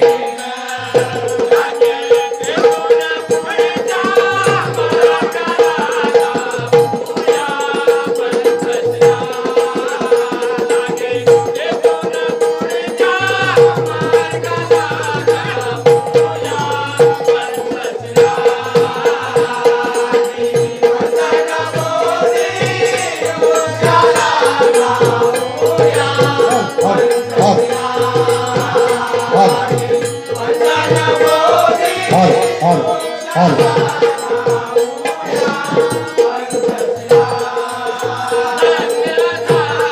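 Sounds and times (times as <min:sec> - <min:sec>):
people singing folk song: 0:00.0 - 0:39.9
rhythmic percussion: 0:00.0 - 0:39.9
held drone tone: 0:23.8 - 0:35.0.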